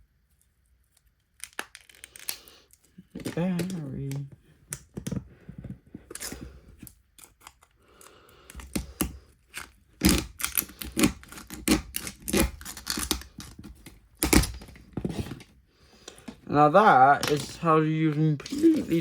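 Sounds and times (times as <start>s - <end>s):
phone snapping and crunching: 1.4s - 2.5s, 7.1s - 15.4s.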